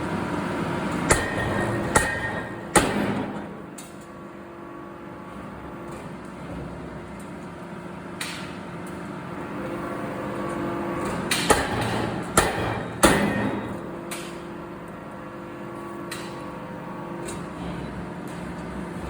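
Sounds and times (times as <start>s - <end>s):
machinery hum: 0.0s - 19.0s
sharp metal impacts: 1.1s - 3.6s, 11.3s - 14.3s.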